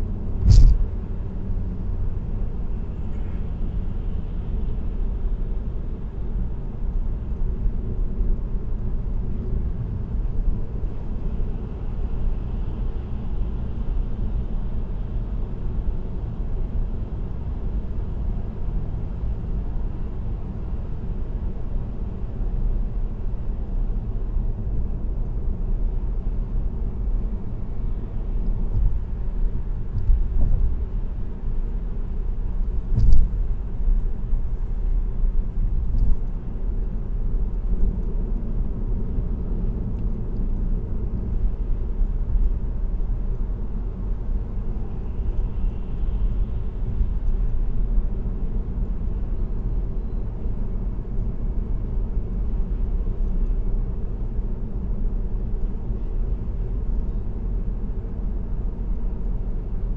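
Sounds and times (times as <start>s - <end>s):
tyre and road noise: 0.0s - 1.3s
short thumps: 0.4s - 0.8s.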